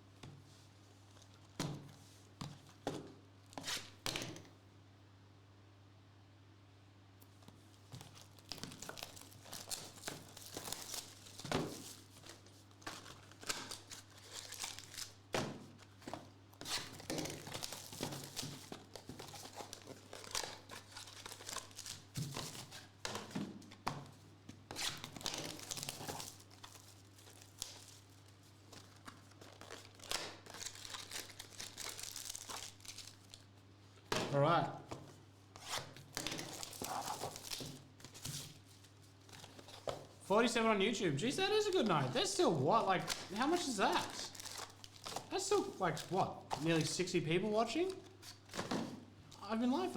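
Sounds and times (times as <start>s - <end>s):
low electrical hum: 0.0s - 49.9s
foil wrappers tearing and crinkling: 8.0s - 15.9s, 16.6s - 23.0s, 24.7s - 33.5s, 35.6s - 40.6s, 41.5s - 47.0s.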